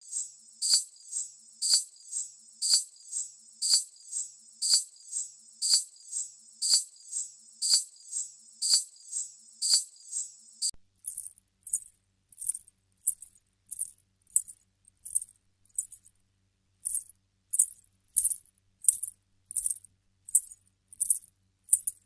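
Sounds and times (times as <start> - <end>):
small metal jingles shaken: 11.0 - 16.1, 16.9 - 22.0.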